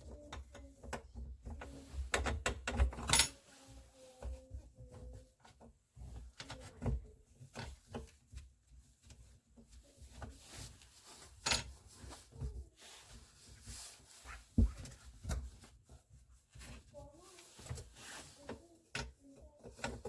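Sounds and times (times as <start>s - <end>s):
tools clicking and knocking: 0.3s - 3.4s.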